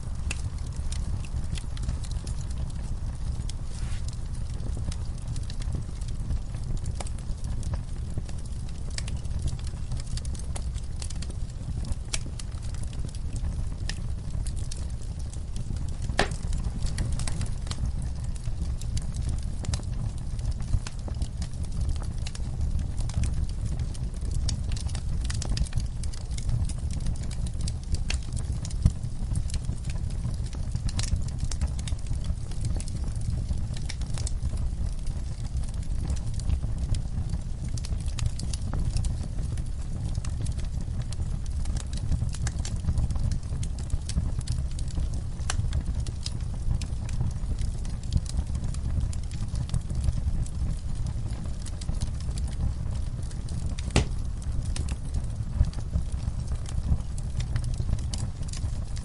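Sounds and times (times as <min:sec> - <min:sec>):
low steady rumble: 0:00.0 - 0:42.3, 0:43.0 - 0:59.0
campfire crackling and popping: 0:00.0 - 0:59.0.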